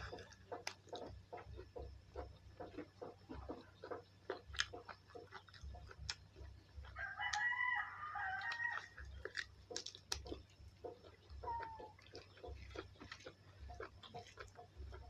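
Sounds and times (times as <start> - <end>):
crunchy chewing: 0.0 - 15.0
rooster crowing: 6.9 - 9.1.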